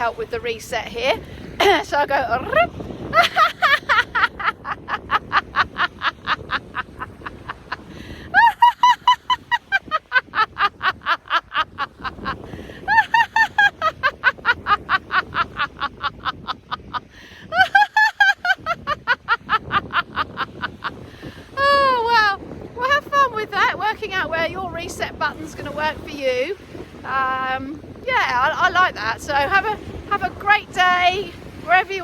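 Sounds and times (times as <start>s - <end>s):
woman laughing: 1.6s - 22.3s
quick breath: 7.9s - 8.3s.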